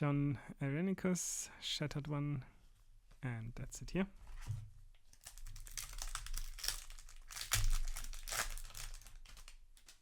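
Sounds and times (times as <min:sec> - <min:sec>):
foil wrapper crinkling: 0:05.1 - 0:10.0.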